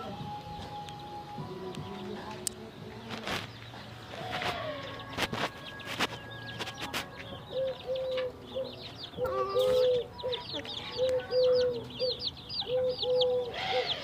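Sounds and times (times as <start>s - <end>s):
chicks peeping: 0.0s - 14.0s
hen clucking: 4.2s - 14.0s.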